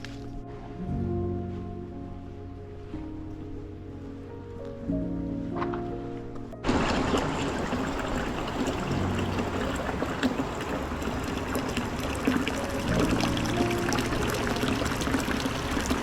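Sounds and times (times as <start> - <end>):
soft background music: 0.0 - 16.0
rushing water: 6.6 - 16.0.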